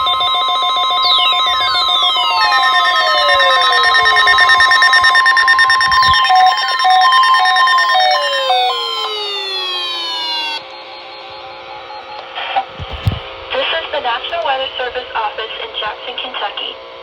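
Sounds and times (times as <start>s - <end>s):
falling gliding tones: 0.0s - 12.2s
pulsing beep: 0.0s - 13.2s
steady high alarm tone: 0.0s - 14.1s.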